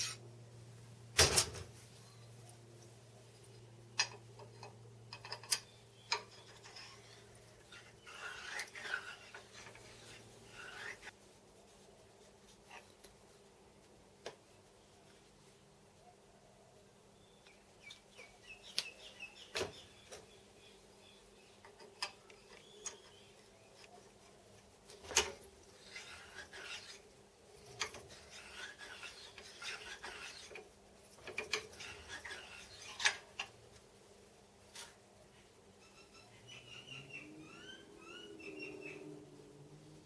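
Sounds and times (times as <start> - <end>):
metal-on-metal scraping: 0.0 - 0.3, 4.0 - 11.2, 24.9 - 33.5
metal clicks and knocks: 4.0 - 6.7.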